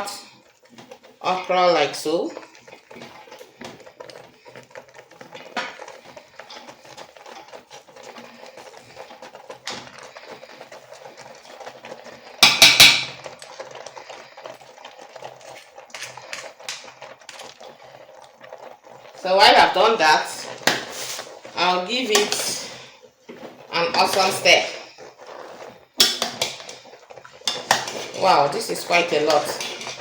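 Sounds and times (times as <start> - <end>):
utensils clinking against pot: 12.4 - 13.2, 27.4 - 30.0.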